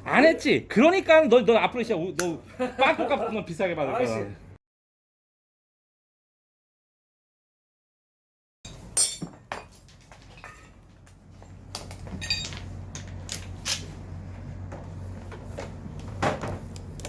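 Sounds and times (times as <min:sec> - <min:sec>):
metal tools clinking on workbench: 0:08.7 - 0:10.8, 0:11.8 - 0:13.2.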